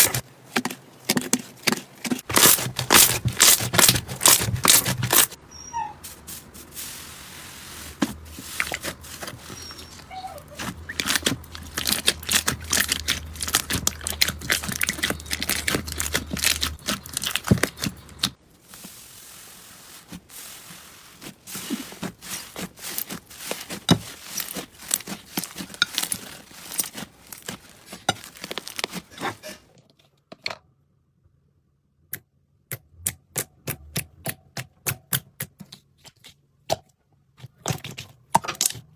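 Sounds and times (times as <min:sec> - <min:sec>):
slime crackling and popping: 0:02.3 - 0:05.3, 0:10.9 - 0:18.4, 0:22.0 - 0:29.2.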